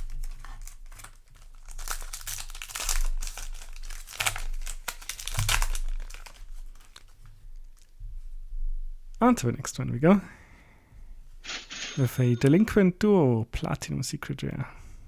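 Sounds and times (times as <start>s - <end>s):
foil wrapper crinkling: 0.0s - 7.9s.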